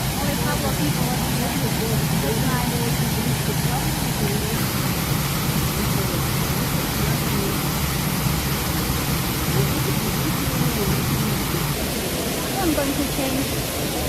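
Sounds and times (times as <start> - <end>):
waterfall rushing: 0.0 - 14.0.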